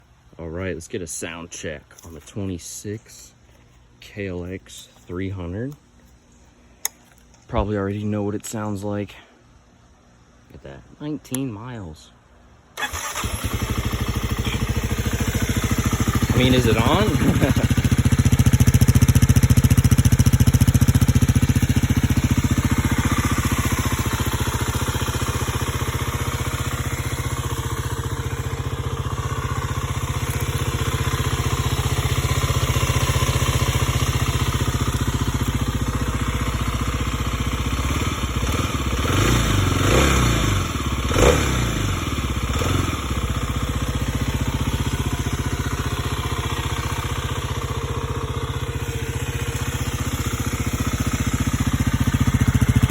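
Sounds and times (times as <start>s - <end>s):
motorcycle engine idling: 12.8s - 52.9s.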